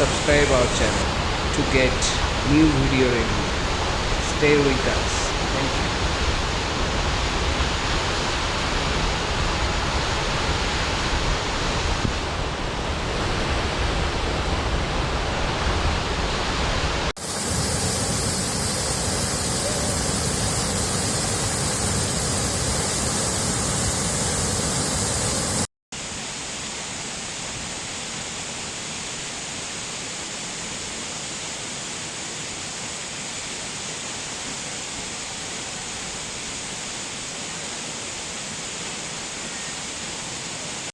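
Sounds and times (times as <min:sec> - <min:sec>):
waterfall rushing: 0:00.0 - 0:12.3, 0:15.5 - 0:25.7.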